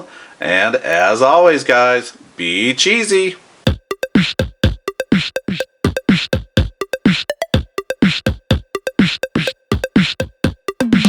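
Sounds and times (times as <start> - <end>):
drum machine beat: 3.7 - 11.0.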